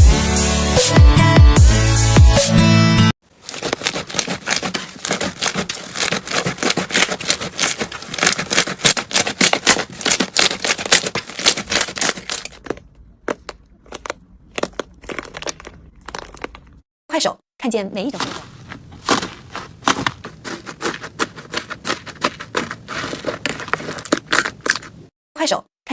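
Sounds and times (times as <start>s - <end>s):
slime crackling and popping: 3.4s - 12.8s.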